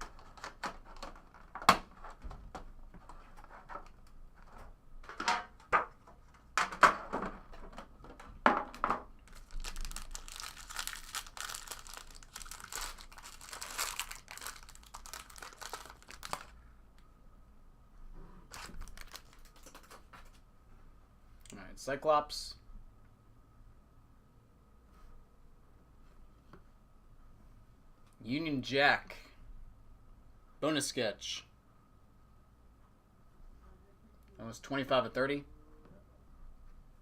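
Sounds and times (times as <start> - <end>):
packaging rustling: 0.0 - 2.4, 9.2 - 16.6, 18.5 - 20.4
wrapper crinkling: 9.2 - 16.6, 18.5 - 20.4.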